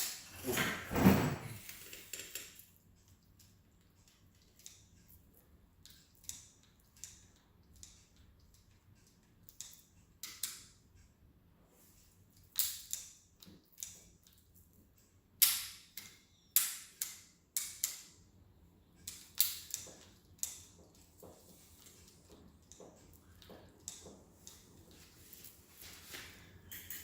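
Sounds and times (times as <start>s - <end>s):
metallic clicks of bicycle parts: 9.4s - 10.8s, 12.4s - 14.1s, 15.4s - 18.2s, 19.0s - 20.7s.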